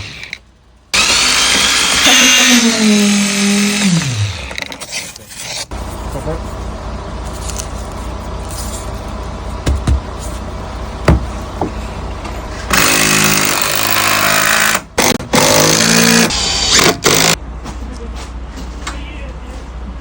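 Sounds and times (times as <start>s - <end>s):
engine hum: 5.7s - 13.4s
sharp knocks: 9.6s - 10.1s, 11.1s - 11.8s.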